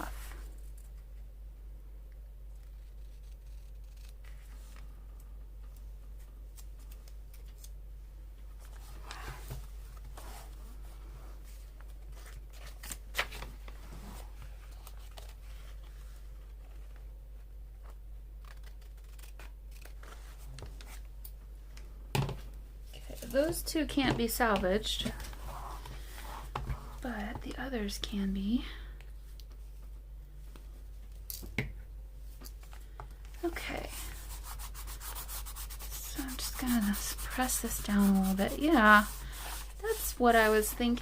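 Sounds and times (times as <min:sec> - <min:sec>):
scissors cutting paper: 0:02.7 - 0:04.5, 0:18.4 - 0:20.1.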